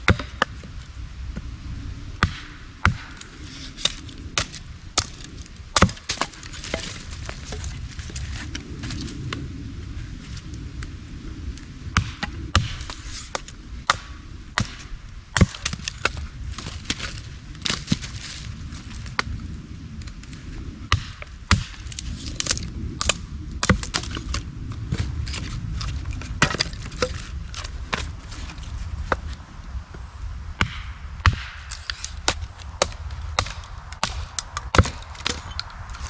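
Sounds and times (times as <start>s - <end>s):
blade splitting wood: 2.2s - 9.0s, 12.0s - 19.3s, 20.9s - 29.4s, 30.6s - 36.0s.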